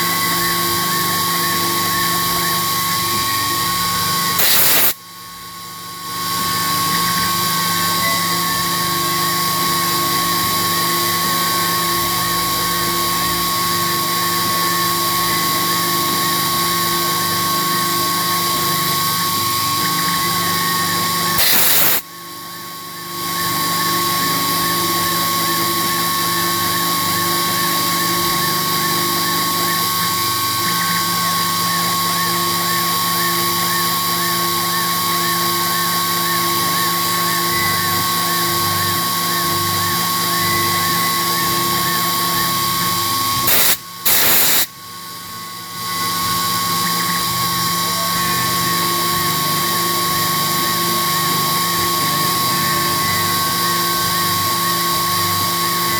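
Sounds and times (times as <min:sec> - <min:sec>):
mill spindle motor whine: 0:00.0 - 0:55.9
loud noise bursts: 0:21.4 - 0:22.0, 0:43.5 - 0:44.7.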